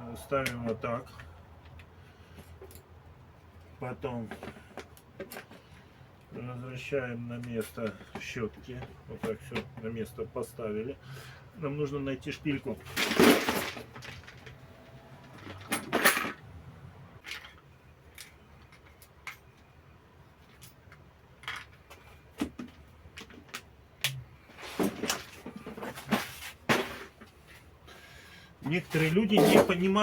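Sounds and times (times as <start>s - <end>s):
metal parts clicking and clattering: 12.8s - 16.4s, 17.2s - 19.7s.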